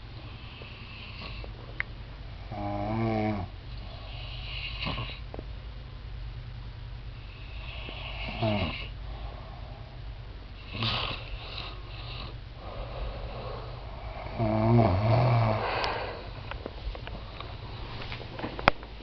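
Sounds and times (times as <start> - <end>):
noisy breath: 0.0 - 1.8, 3.6 - 5.3, 7.2 - 18.6
people snoring: 2.5 - 5.2, 7.3 - 9.0, 10.6 - 16.6.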